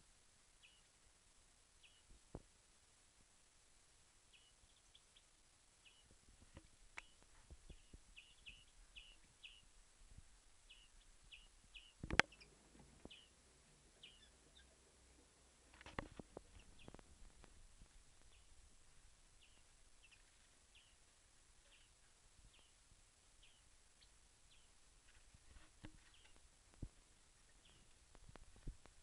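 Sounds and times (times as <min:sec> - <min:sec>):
bird chirping: 0:00.6 - 0:01.0, 0:01.8 - 0:02.1, 0:04.3 - 0:09.7, 0:10.6 - 0:15.3, 0:15.9 - 0:17.4, 0:18.0 - 0:18.6, 0:19.3 - 0:22.8, 0:23.4 - 0:26.4, 0:27.2 - 0:28.0.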